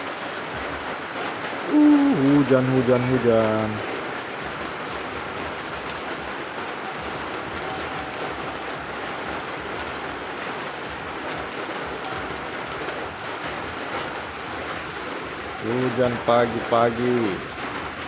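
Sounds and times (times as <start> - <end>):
steady rain falling: 0.0 - 18.0.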